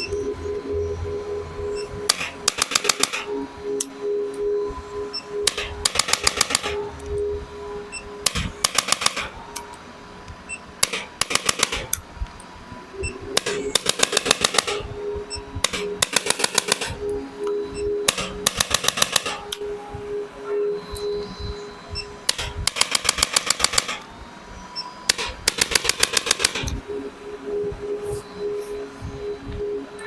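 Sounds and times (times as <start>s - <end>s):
rapid clicking bursts: 2.0s - 3.9s, 5.4s - 7.2s, 7.9s - 9.7s, 10.8s - 12.4s, 13.4s - 17.2s, 17.8s - 19.7s, 22.0s - 24.1s, 25.1s - 27.0s.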